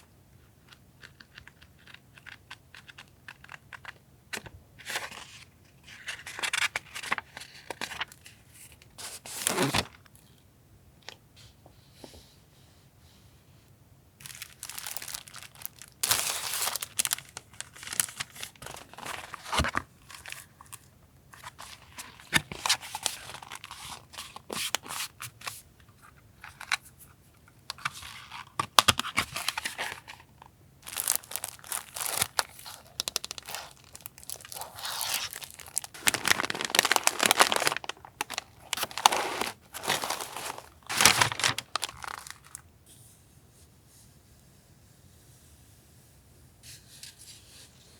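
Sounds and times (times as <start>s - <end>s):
paper packaging crinkling and tearing: 9.0s - 10.0s, 14.2s - 25.6s, 27.7s - 42.6s.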